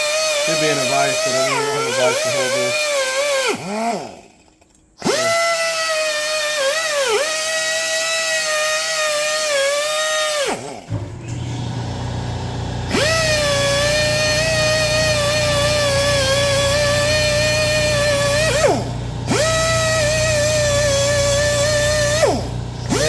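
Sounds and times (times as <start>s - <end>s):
wire wheel grinding steel: 0.0s - 5.3s, 11.2s - 23.0s
power tool wire wheel whining: 0.0s - 23.0s.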